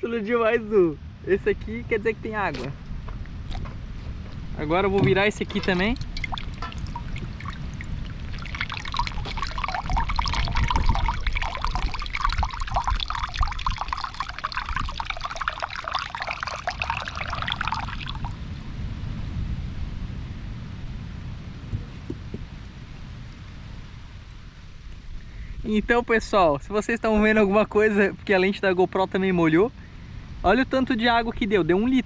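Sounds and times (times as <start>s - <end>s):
coconut water pouring: 5.1s - 18.4s.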